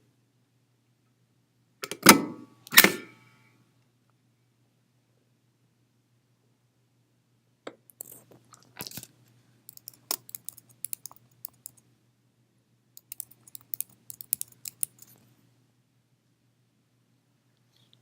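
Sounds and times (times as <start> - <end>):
crisp crunching and clicks: 8.0 - 9.2.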